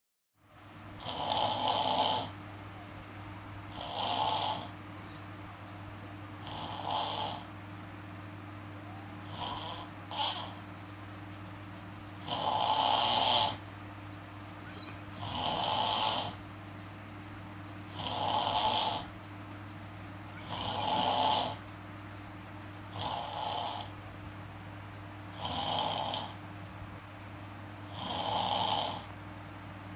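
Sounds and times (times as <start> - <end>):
person snoring: 1.0 - 2.4, 3.7 - 4.8, 6.4 - 7.5, 9.2 - 10.6, 12.2 - 13.6, 14.6 - 16.4, 17.9 - 19.1, 20.4 - 21.6, 22.9 - 24.0, 25.3 - 26.4, 27.9 - 29.1.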